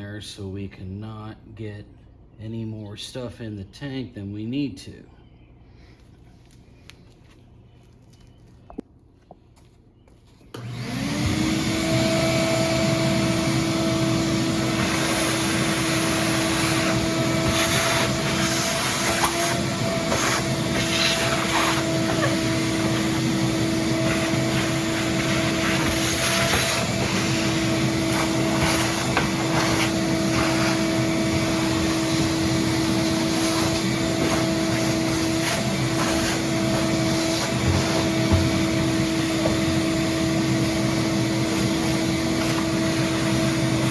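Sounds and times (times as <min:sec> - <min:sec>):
vacuum cleaner running: 0:10.5 - 0:43.9.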